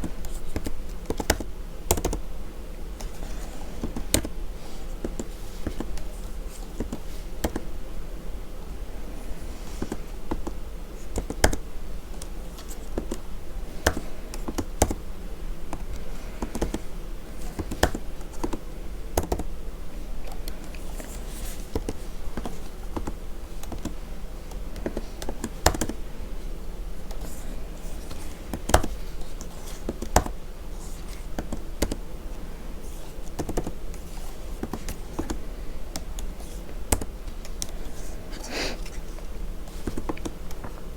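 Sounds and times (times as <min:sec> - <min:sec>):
keyboard typing: 0:00.0 - 0:02.2, 0:05.0 - 0:07.7, 0:09.8 - 0:13.2, 0:13.8 - 0:15.0, 0:15.7 - 0:18.6, 0:19.2 - 0:19.5, 0:20.2 - 0:26.0, 0:27.1 - 0:32.0, 0:32.9 - 0:38.0
steady low hum: 0:00.0 - 0:40.9.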